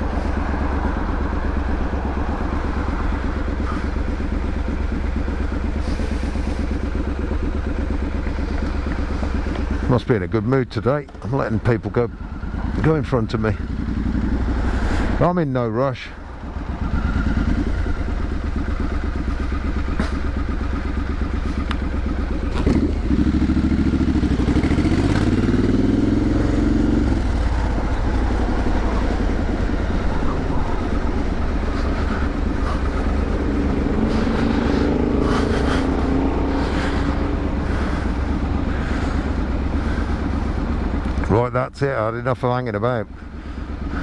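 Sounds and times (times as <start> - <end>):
motorcycle engine rumbling: 0.0 - 44.0.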